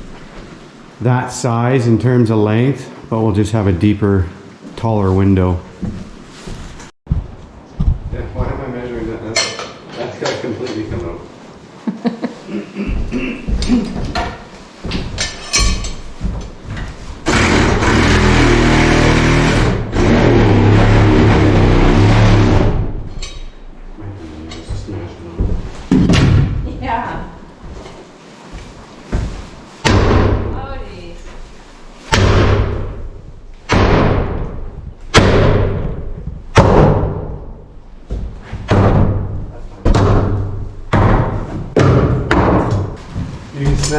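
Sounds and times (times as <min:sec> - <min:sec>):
loud power tool running: 0:17.3 - 0:22.8
hammer blows on wooden studs: 0:33.7 - 0:43.0.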